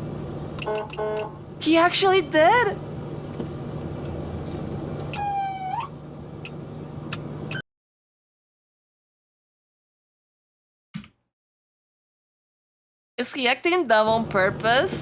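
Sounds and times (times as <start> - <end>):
vehicle hum: 0.0 - 7.6
police siren whoop: 5.2 - 5.9.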